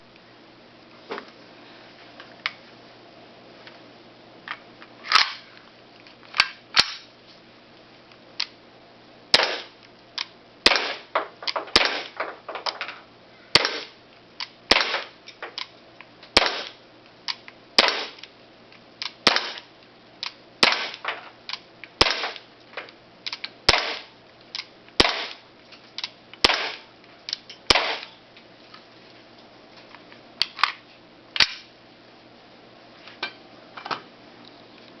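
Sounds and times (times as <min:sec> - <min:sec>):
airsoft pistol firing: 0:09.3 - 0:09.8, 0:10.6 - 0:12.4, 0:13.5 - 0:14.0, 0:14.7 - 0:15.2, 0:16.4 - 0:16.8, 0:17.8 - 0:18.2, 0:19.2 - 0:19.7, 0:20.6 - 0:21.1, 0:22.0 - 0:22.4, 0:23.7 - 0:24.1, 0:25.0 - 0:25.4, 0:26.4 - 0:26.8, 0:27.7 - 0:28.1.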